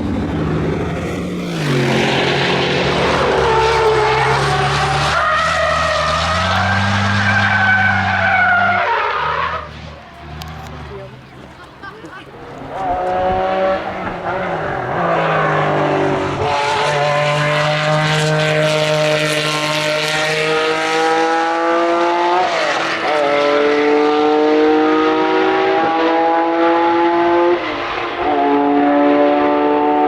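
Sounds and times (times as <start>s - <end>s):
racing car engine accelerating: 0.0s - 11.4s, 12.3s - 30.0s.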